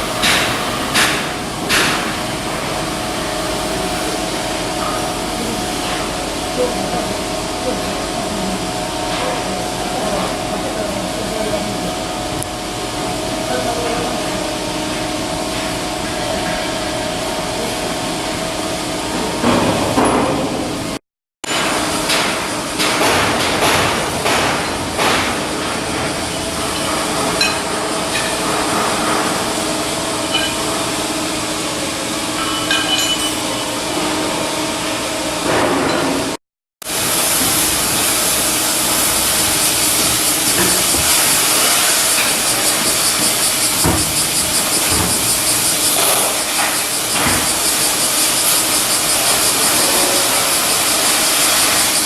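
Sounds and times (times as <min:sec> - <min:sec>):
machinery hum: 0:00.0 - 0:52.0
hiss of cutting or welding: 0:36.9 - 0:52.0.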